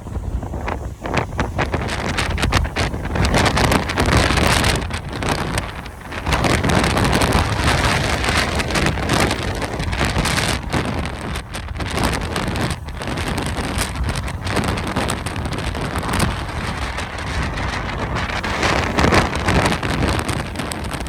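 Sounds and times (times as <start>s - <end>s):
gusty wind buffeting microphone: 0.0s - 21.0s.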